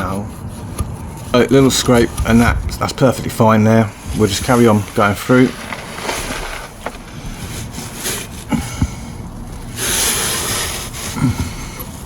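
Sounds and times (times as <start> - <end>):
scraping metal brake pipe: 0.4 - 8.5.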